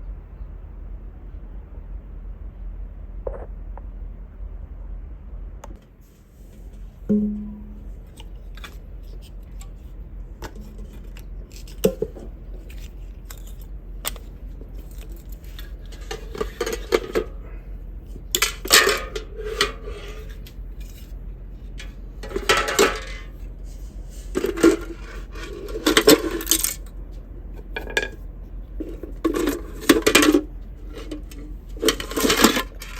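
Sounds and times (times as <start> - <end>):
small metal parts clinking: 10.4 - 17.4, 18.3 - 21.1, 21.8 - 23.4, 24.3 - 26.9, 28.8 - 32.9
metal parts clattering: 10.4 - 17.5, 18.3 - 21.1, 21.7 - 23.4, 24.2 - 26.9, 27.7 - 28.2, 28.8 - 32.9.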